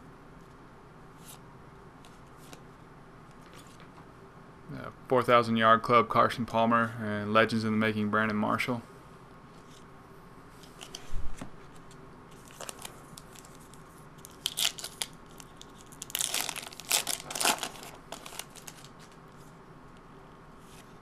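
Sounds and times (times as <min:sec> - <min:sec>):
foil wrapper crinkling and tearing: 0:12.4 - 0:19.2.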